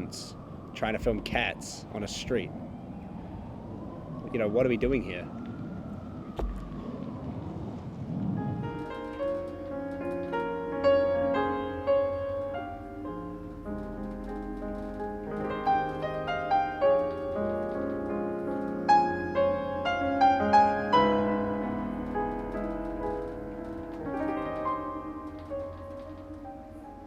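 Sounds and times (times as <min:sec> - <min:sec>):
background piano music: 0:04.8 - 0:27.0.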